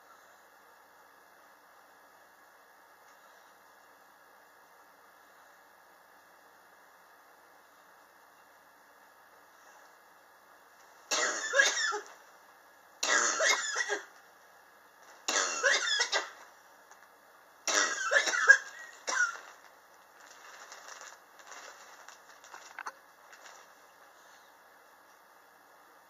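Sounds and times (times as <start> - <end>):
person coughing: 11.1 - 12.1, 13.0 - 14.1, 17.7 - 19.4.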